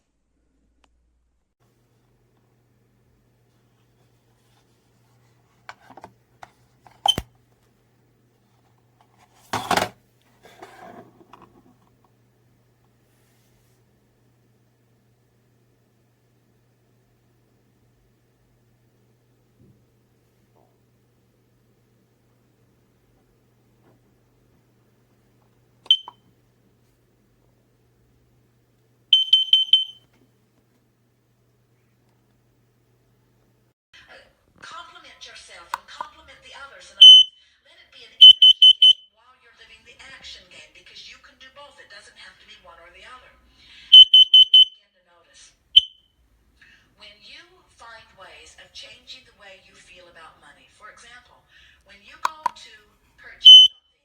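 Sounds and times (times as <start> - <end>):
faint low hum: 0.0 - 54.0
alarm high beeps: 25.9 - 26.1, 29.2 - 30.0, 37.0 - 37.3, 38.2 - 39.0, 44.0 - 44.8, 53.5 - 53.8.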